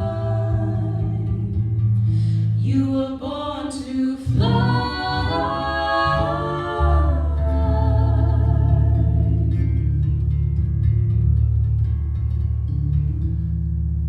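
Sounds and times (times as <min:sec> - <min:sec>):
voices singing in harmony: 0:00.0 - 0:01.7, 0:02.6 - 0:10.0.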